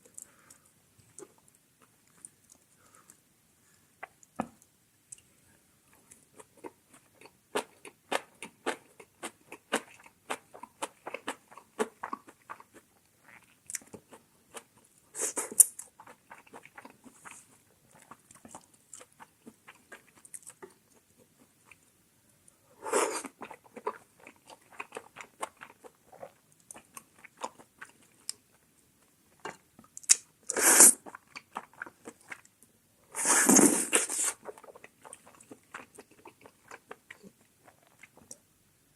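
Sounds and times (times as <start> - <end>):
chewing and crunching food: 5.2 - 21.9, 22.5 - 30.4, 31.0 - 32.7, 33.9 - 38.5.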